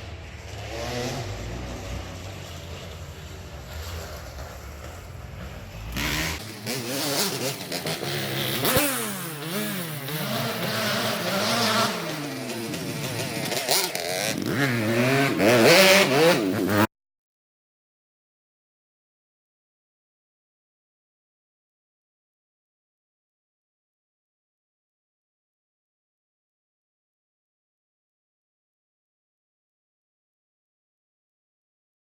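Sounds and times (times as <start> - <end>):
dirt bike engine revving: 0.0 - 16.9.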